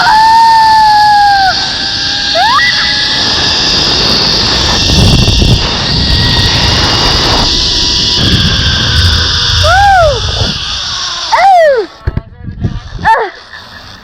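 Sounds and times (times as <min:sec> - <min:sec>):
person whooping: 0:00.0 - 0:03.1, 0:09.5 - 0:10.6, 0:11.3 - 0:12.0
wind on microphone: 0:00.0 - 0:14.0
zipline trolley whirring on cable: 0:00.0 - 0:14.0.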